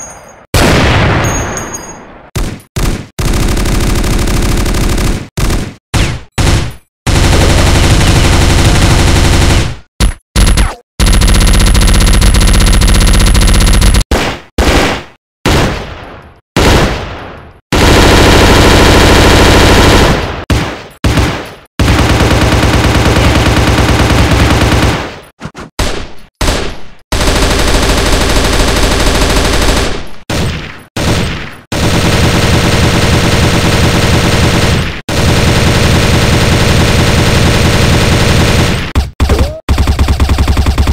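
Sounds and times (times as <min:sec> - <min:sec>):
automatic gunfire with echoing tails: 0:02.3 - 0:40.9
single gunshots: 0:14.1 - 0:17.4.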